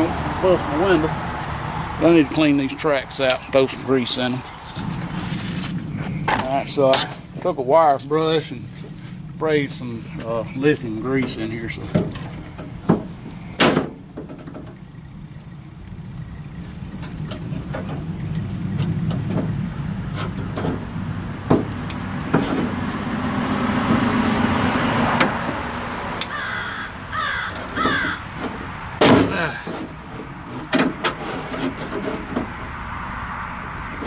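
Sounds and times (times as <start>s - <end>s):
rough rubbing and rumbling: 0.0s - 34.0s
knocks and clicks of window glass: 11.2s - 14.9s, 17.0s - 26.4s, 27.2s - 32.8s.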